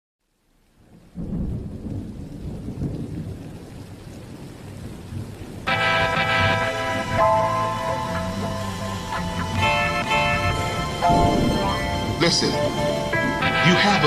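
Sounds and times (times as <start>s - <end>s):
rain: 0.2s - 14.0s
low rolling thunder: 0.8s - 14.0s
sustained musical chord: 5.7s - 14.0s.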